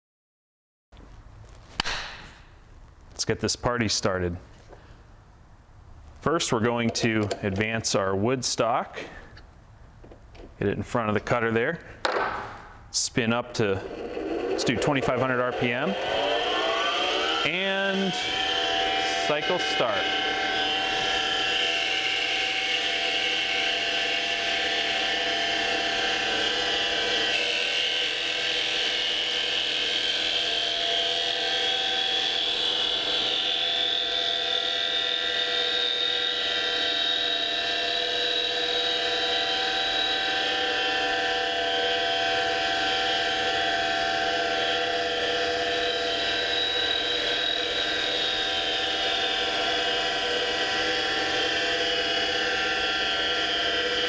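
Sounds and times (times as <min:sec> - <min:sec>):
lathe cutting wood: 0:13.3 - 0:54.0.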